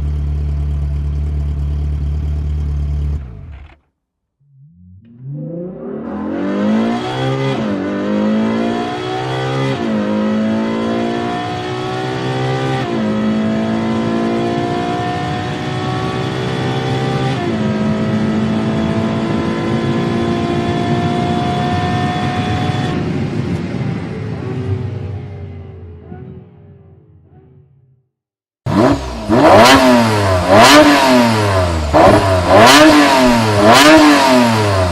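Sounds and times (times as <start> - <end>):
car engine accelerating through gears: 4.5 - 24.0, 28.7 - 34.9.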